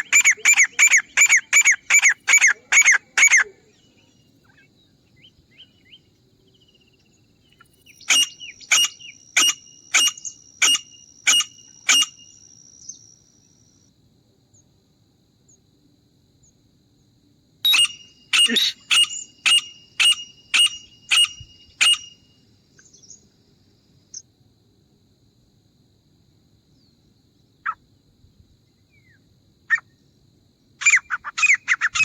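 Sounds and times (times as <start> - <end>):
francolin calling: 0.0 - 13.2, 17.7 - 23.3, 30.8 - 32.0
faint bird chirps: 0.0 - 13.9, 17.7 - 23.4.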